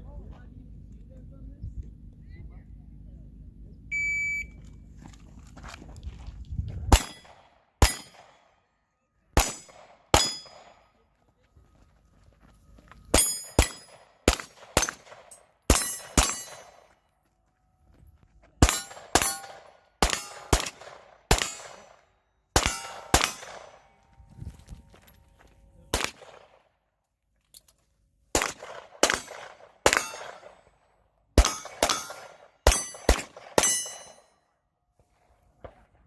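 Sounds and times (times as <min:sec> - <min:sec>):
pistol shots: 0:06.9 - 0:08.5, 0:09.4 - 0:10.9, 0:13.1 - 0:16.9, 0:18.6 - 0:23.9, 0:25.9 - 0:26.6, 0:28.3 - 0:30.8, 0:31.4 - 0:34.2
steel targets ringing: 0:09.5 - 0:10.8, 0:13.1 - 0:14.1, 0:14.8 - 0:16.8, 0:18.6 - 0:20.5, 0:22.6 - 0:23.8, 0:29.9 - 0:30.5, 0:31.4 - 0:34.4.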